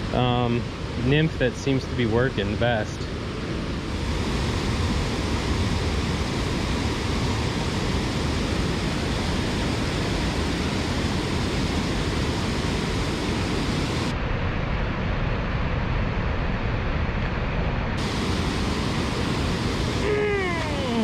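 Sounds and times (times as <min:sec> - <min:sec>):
fast flowing water: 0:03.8 - 0:14.1, 0:18.0 - 0:21.0
waterfall rushing: 0:18.0 - 0:21.0.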